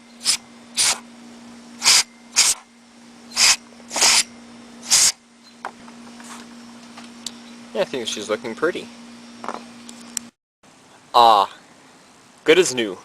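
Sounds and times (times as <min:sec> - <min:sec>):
compressed air hissing bursts: 0:00.2 - 0:01.0, 0:01.8 - 0:02.6, 0:03.3 - 0:05.2.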